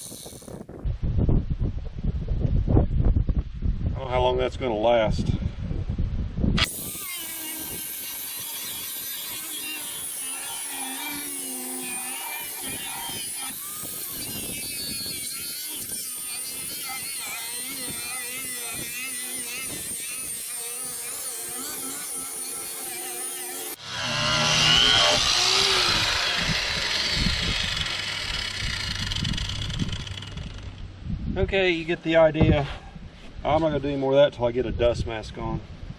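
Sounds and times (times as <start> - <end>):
angle grinder grinding: 0.0 - 0.6, 6.6 - 30.9.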